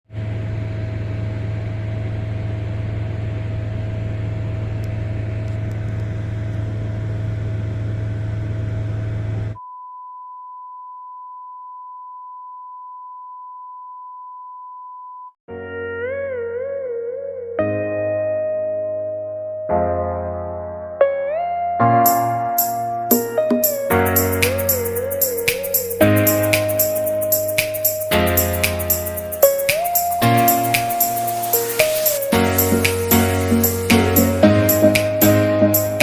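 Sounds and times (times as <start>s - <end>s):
electric piano music: 15.5s - 36.0s
mechanical drone with hum and hiss: 30.2s - 36.0s.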